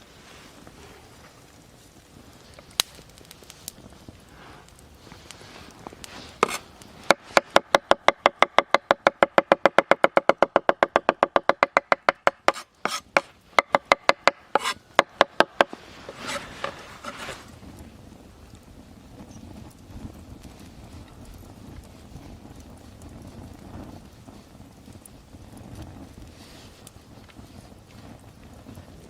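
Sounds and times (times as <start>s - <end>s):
knife scraping board: 6.3s - 6.6s, 12.4s - 17.5s
knife chopping on wooden board: 6.4s - 17.2s.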